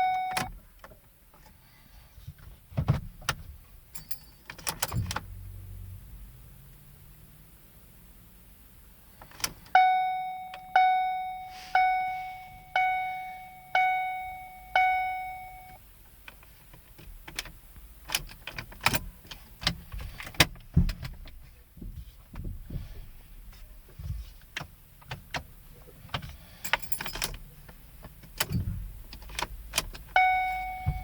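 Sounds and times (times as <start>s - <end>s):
car warning chime dinging: 0.0s - 0.6s, 9.7s - 15.8s, 30.1s - 31.0s
keys jangling: 4.0s - 5.2s, 26.6s - 27.4s.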